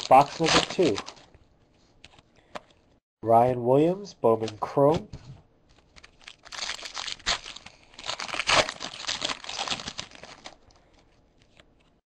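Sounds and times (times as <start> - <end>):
foil wrapper crinkling and tearing: 0.0 - 1.3, 5.9 - 11.6.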